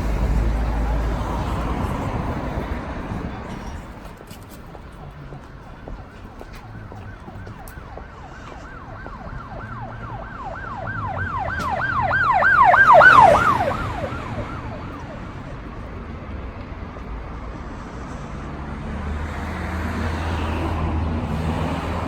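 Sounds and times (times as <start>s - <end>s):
street traffic: 0.0s - 22.0s
emergency siren yelping: 5.8s - 16.3s.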